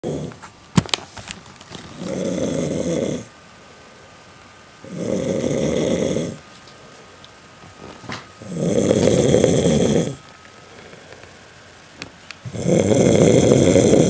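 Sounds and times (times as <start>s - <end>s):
snoring: 0.0s - 0.4s, 1.9s - 3.3s, 4.8s - 6.4s, 8.4s - 10.2s, 12.4s - 14.0s.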